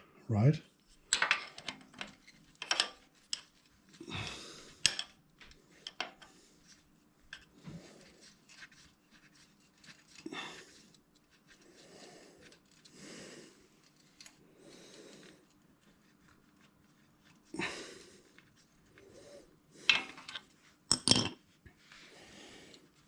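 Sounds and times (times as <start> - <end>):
metal parts clicking and clinking: 1.1 - 3.4, 20.0 - 21.4.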